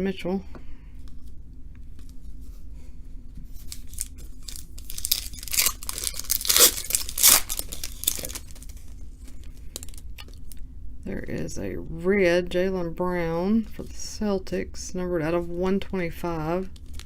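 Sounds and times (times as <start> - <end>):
foil wrapper tearing and crinkling: 3.6 - 10.1.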